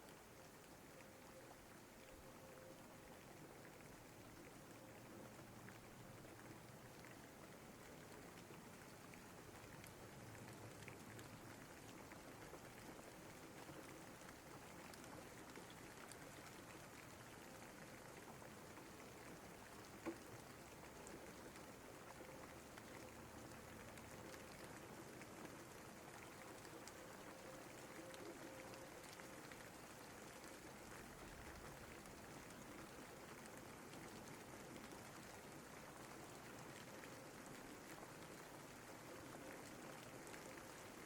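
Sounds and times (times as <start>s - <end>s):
soft rain: 0.0s - 41.0s
raindrops ticking: 18.2s - 35.3s.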